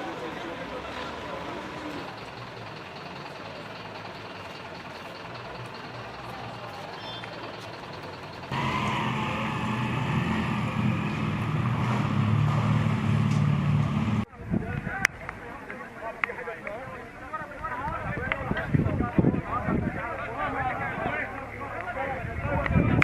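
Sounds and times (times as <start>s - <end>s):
heavy engine running: 0.0s - 14.3s
outdoor noise: 0.0s - 23.0s.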